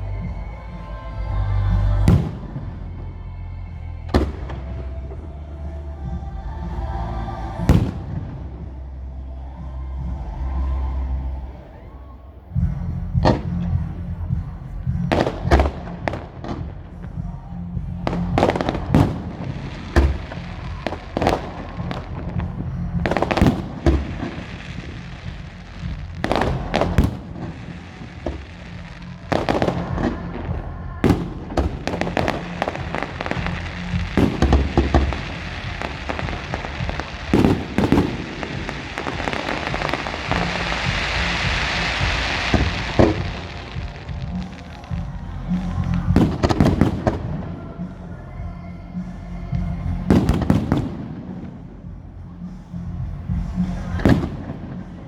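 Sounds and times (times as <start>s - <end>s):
low rumble: 0.0s - 55.0s
hissing crackle: 13.4s - 47.2s
firework shells bursting: 18.0s - 47.4s.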